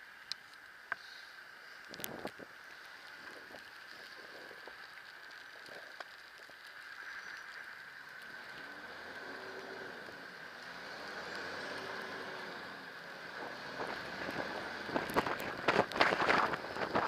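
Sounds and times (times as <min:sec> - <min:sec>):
tyres on wet snowy road: 0:00.0 - 0:17.0
wind: 0:00.0 - 0:17.0
vehicle engine approaching: 0:08.0 - 0:17.0.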